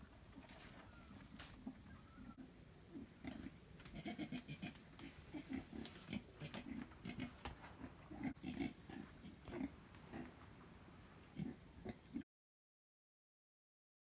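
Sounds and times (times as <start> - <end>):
pigs grunting: 0.4 - 10.4, 11.3 - 12.2.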